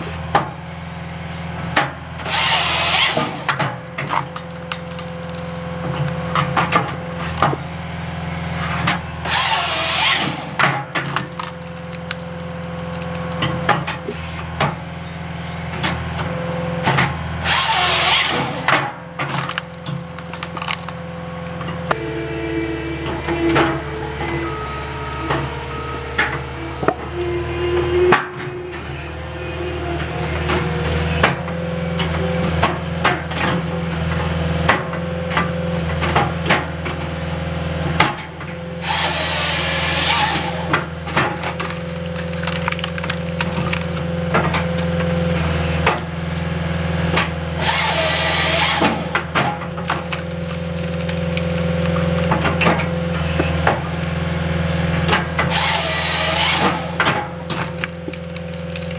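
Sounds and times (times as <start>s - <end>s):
machinery running: 1.5s - 34.2s, 47.4s - 58.9s
wood cracking and falling: 3.1s - 14.1s, 17.5s - 22.0s, 38.9s - 44.8s, 47.7s - 54.2s, 55.1s - 58.9s.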